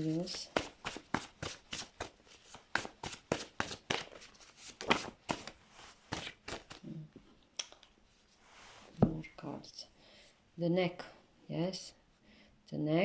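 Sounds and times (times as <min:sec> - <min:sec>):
cards shuffled by hand: 0:00.0 - 0:06.9.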